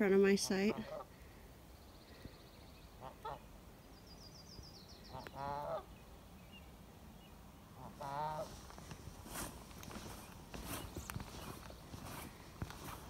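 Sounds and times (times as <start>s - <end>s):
goose honking: 3.0s - 3.4s, 5.1s - 5.9s, 7.8s - 8.6s.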